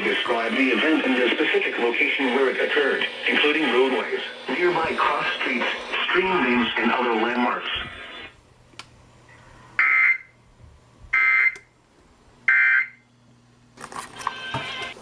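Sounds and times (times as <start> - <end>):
noisy burst: 0.0 - 8.6.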